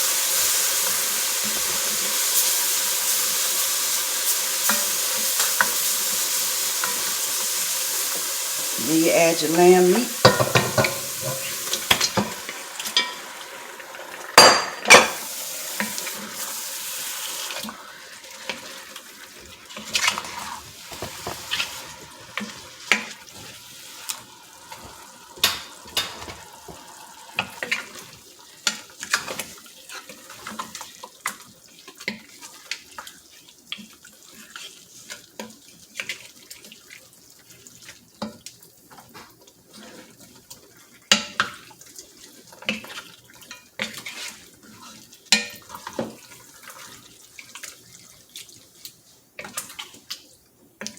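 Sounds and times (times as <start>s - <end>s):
meat sizzling in a pot: 0.0s - 50.9s
utensil scraping a pot: 8.8s - 12.4s, 19.7s - 26.8s.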